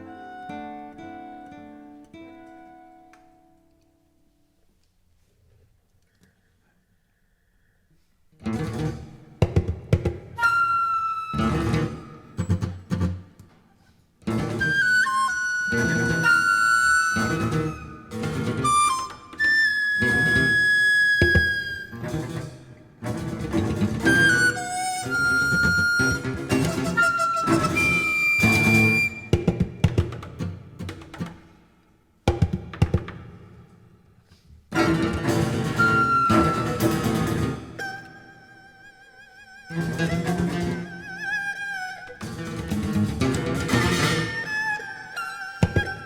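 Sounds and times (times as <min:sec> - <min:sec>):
flute holding high note: 0:10.4 - 0:12.2, 0:24.0 - 0:29.3, 0:35.7 - 0:39.6.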